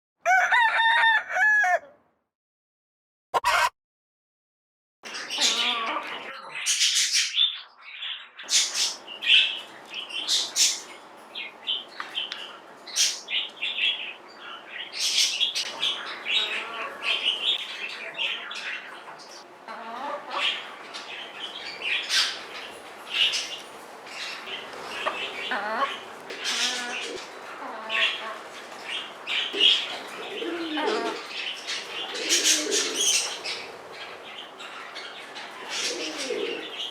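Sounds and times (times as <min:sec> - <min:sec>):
chicken calling: 0:15.1 - 0:20.8, 0:24.5 - 0:31.3.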